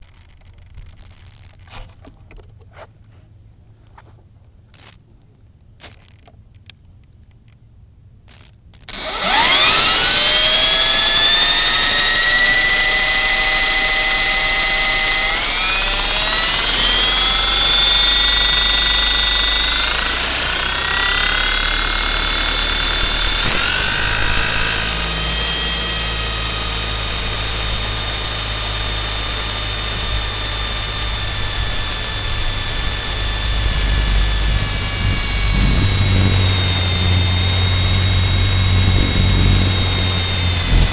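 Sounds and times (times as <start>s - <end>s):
rc helicopter motor whine: 8.8s - 40.9s.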